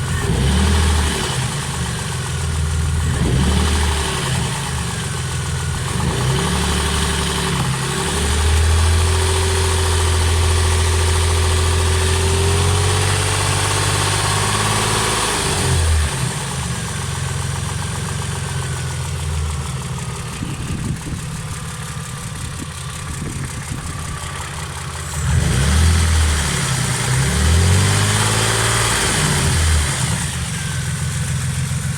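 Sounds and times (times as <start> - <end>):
engine knocking: 0.0 - 12.2, 16.4 - 25.6, 30.2 - 31.9
car engine idling and revving: 0.0 - 31.9.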